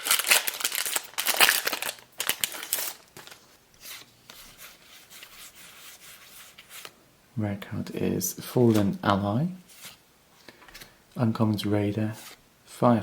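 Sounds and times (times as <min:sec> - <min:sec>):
wrapper tearing and crinkling: 0:00.0 - 0:03.5
cards rustling: 0:00.0 - 0:05.3, 0:08.6 - 0:09.0.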